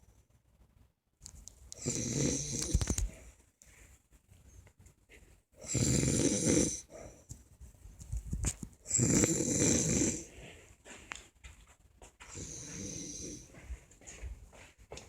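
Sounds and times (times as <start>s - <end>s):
quiet breathing: 1.7s - 8.0s, 8.8s - 11.3s, 12.2s - 14.7s
woman snoring: 1.8s - 3.0s, 5.6s - 6.9s, 8.9s - 10.3s, 12.3s - 13.5s.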